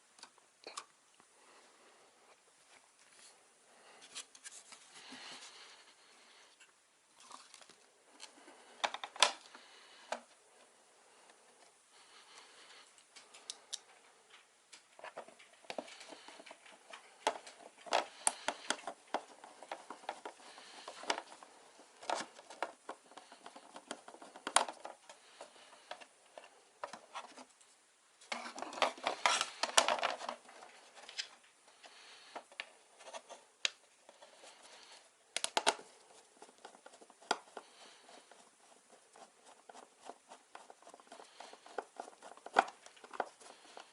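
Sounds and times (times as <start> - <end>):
hands handling computer parts: 4.0 - 5.5, 8.2 - 10.4, 12.8 - 43.9.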